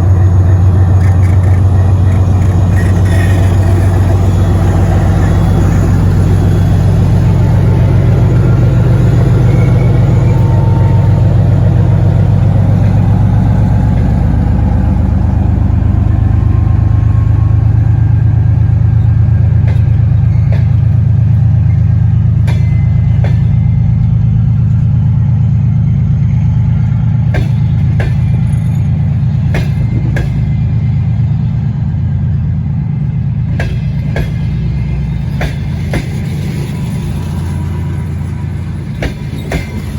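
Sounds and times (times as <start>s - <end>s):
wheels clicking over rail joints: 0.0s - 14.2s, 33.6s - 39.9s
locomotive diesel engine drone: 0.0s - 39.9s.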